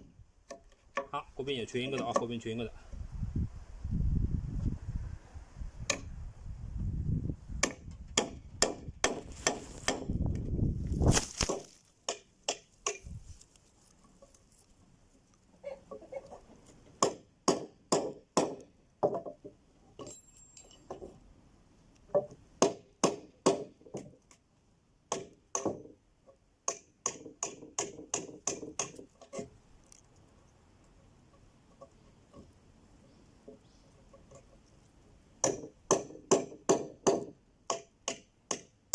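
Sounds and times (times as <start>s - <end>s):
hammer striking chisel in wood: 7.6s - 10.1s, 17.0s - 19.4s, 22.2s - 24.1s, 25.1s - 25.9s, 26.6s - 29.5s, 35.4s - 38.7s.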